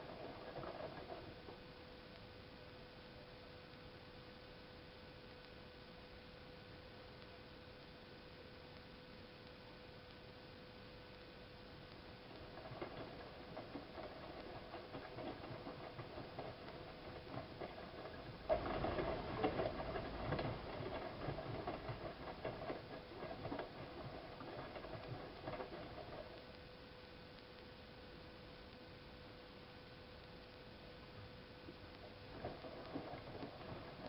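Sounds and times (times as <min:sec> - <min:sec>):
washing machine tumbling laundry: 0:00.0 - 0:01.6, 0:12.2 - 0:26.5, 0:31.9 - 0:34.0.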